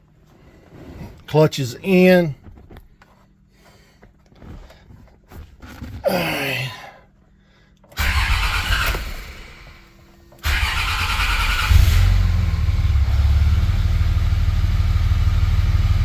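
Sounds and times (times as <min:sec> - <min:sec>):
diesel engine cranking: 0:08.0 - 0:14.5.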